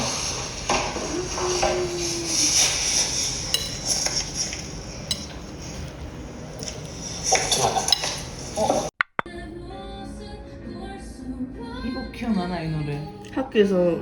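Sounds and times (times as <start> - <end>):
cutlery and dishes clinking: 0.7 - 6.0, 6.6 - 8.9.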